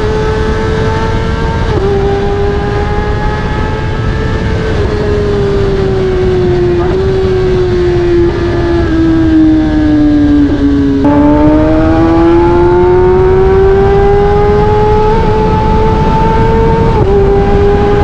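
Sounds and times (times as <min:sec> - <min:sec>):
motorcycle engine revving: 0:00.0 - 0:18.0.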